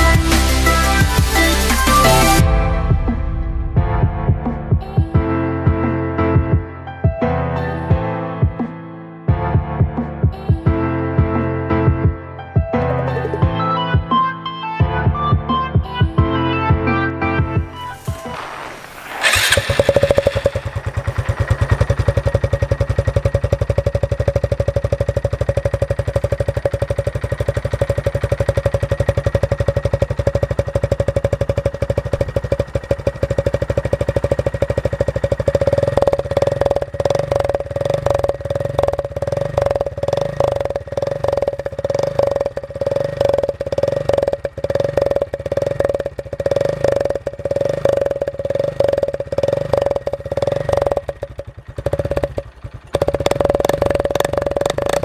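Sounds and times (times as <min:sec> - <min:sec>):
motorcycle engine idling: 0:17.4 - 0:55.0
motorcycle throttle blips: 0:17.4 - 0:55.0.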